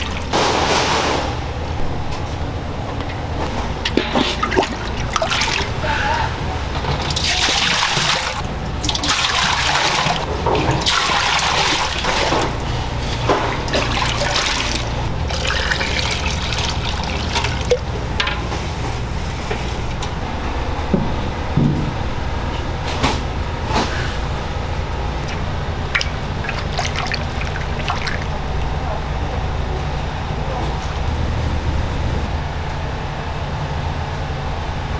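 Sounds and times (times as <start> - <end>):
steady low hum: 0.0 - 34.9
tap water splashing into sink: 25.2 - 28.8.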